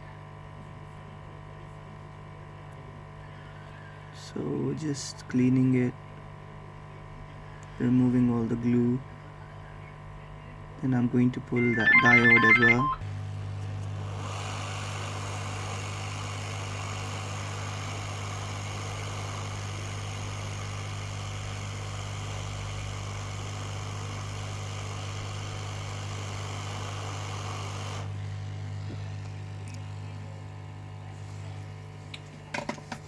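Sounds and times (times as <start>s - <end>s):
mains hum: 0.0s - 13.1s, 28.0s - 33.0s.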